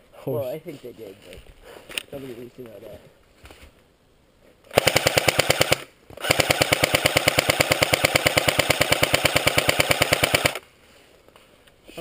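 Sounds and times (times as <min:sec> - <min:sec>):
airsoft gun firing full-auto: 0:04.7 - 0:10.6.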